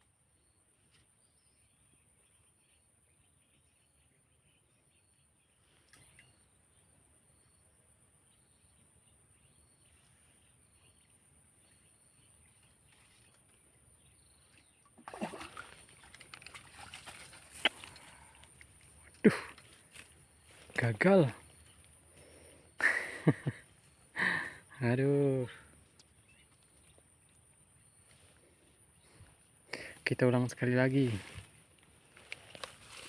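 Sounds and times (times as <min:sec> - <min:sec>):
faint chirps: 0:00.0 - 0:33.0
water splashing: 0:14.9 - 0:18.4.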